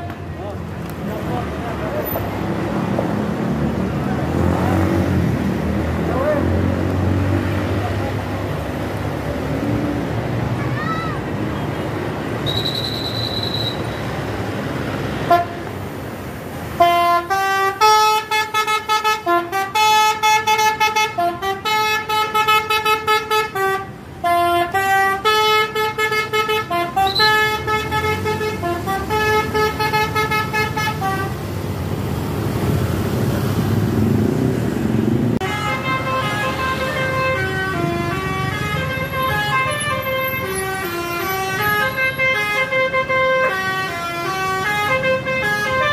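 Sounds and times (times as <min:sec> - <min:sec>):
bus engine rumble: 0:00.0 - 0:45.9
multi-tone musical bus horn: 0:15.1 - 0:15.7, 0:16.7 - 0:31.5, 0:35.4 - 0:45.9.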